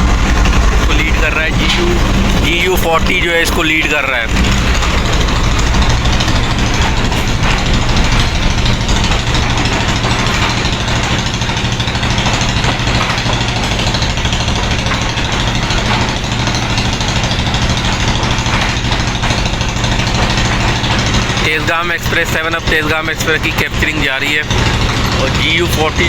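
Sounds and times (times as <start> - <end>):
diesel locomotive engine drone: 0.0 - 26.0.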